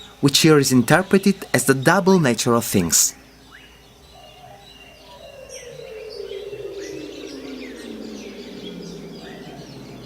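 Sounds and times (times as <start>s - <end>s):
bird chirps and calls: 0.0s - 10.0s
synthesized sweep sliding down: 4.9s - 10.0s.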